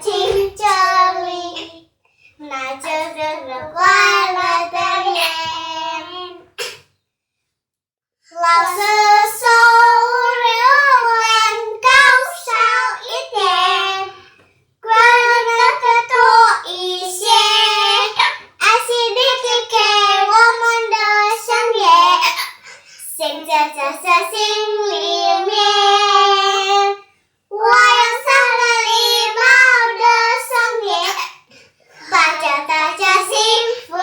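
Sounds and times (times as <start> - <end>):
child singing: 0.0 - 6.6, 8.3 - 34.0.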